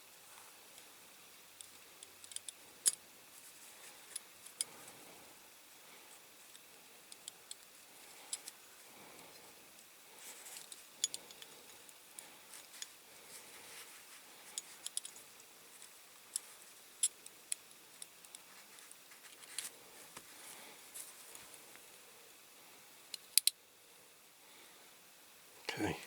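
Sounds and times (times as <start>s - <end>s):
toy car parts clicking: 23.1s - 23.6s.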